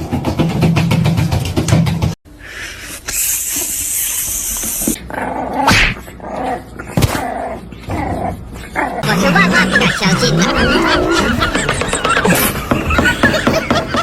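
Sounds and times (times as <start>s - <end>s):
dog growling and barking: 5.0s - 13.6s.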